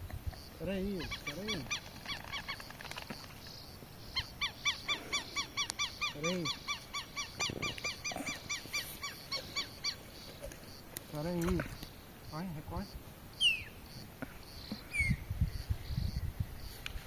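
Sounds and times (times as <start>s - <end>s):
bird harsh honking calls: 4.2s - 10.5s.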